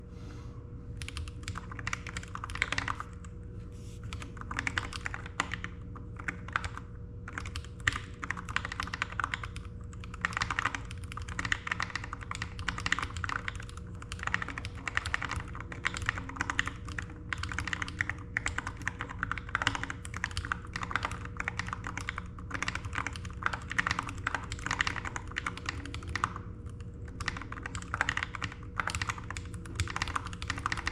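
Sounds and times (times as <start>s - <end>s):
faint steady hum: 0.0s - 30.9s
typing on mechanical keyboard: 1.0s - 3.3s, 4.1s - 30.9s.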